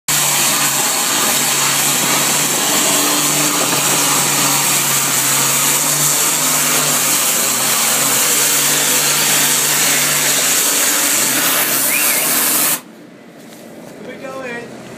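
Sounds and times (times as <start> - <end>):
pressure washer motor hum: 0.1 - 12.9
pressure washer spray hissing: 9.5 - 12.8.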